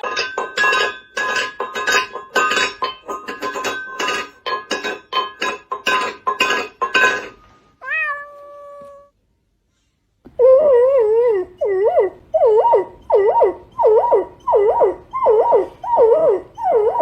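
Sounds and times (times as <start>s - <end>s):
cat meowing: 7.8s - 9.1s.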